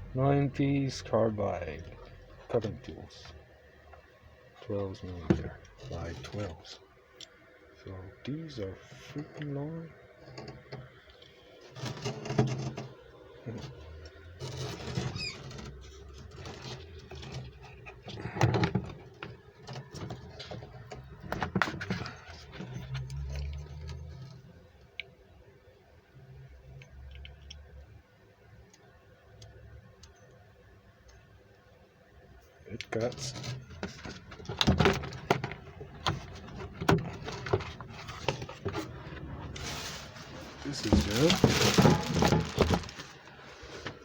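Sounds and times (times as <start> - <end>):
rustling and scraping: 4.6 - 6.8, 8.8 - 24.6, 32.9 - 44.0.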